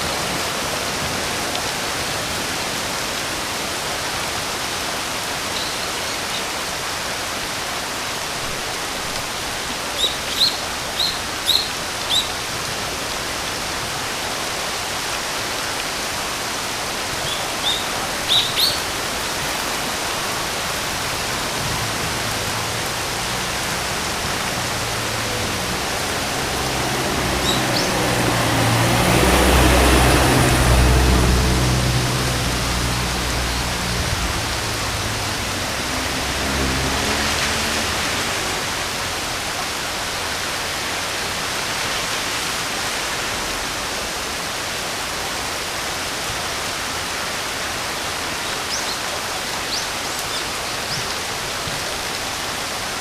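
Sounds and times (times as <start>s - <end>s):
steady rain hiss: 0.0s - 53.0s
bird chirping: 17.2s - 18.8s, 27.4s - 28.0s.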